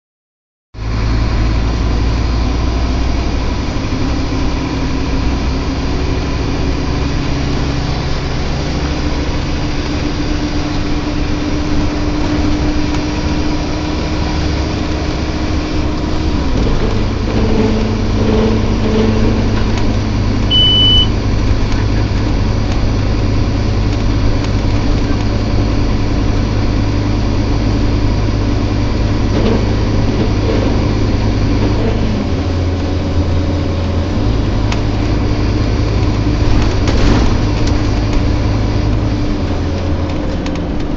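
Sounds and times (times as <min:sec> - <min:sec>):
bus engine and road noise: 0:00.8 - 0:40.9
drawn-out groaning tone: 0:01.0 - 0:24.1, 0:24.7 - 0:40.9
short high beep: 0:20.5 - 0:21.2.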